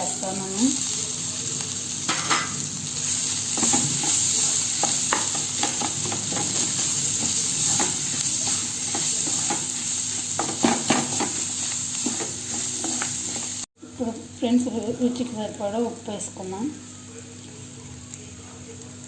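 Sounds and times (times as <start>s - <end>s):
onions and potatoes frying: 0.0s - 19.0s
spatula tapping and scraping pan: 3.6s - 13.6s.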